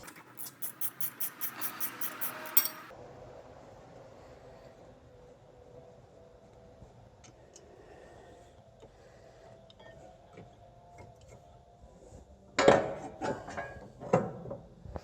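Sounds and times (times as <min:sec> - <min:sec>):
metal brake parts clanking: 0:02.4 - 0:02.9.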